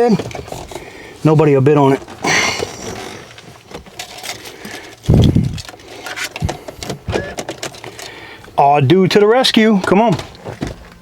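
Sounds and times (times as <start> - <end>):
clicks and rattles of equipment: 0.0 - 1.0, 2.0 - 8.5, 9.8 - 11.0.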